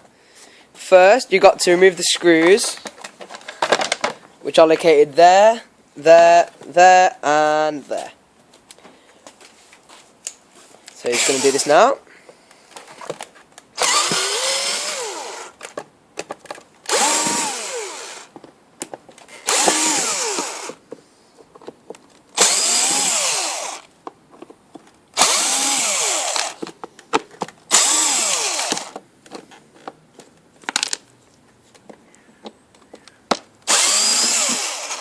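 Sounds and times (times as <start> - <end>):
cordless drill whining: 11.1 - 11.7, 13.8 - 15.6, 16.9 - 18.3, 19.4 - 20.8, 22.4 - 23.9, 25.2 - 26.6, 27.7 - 29.0, 33.6 - 35.0.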